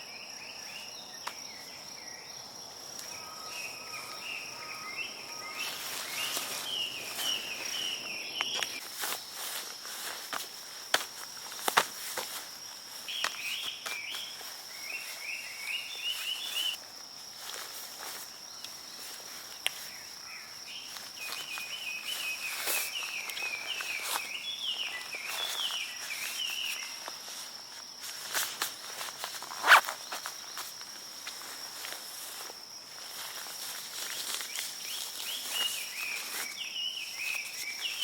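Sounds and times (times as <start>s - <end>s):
high insect drone: 0.0s - 38.0s
bird chirping: 3.2s - 8.8s, 13.1s - 16.8s
footsteps: 5.5s - 15.2s.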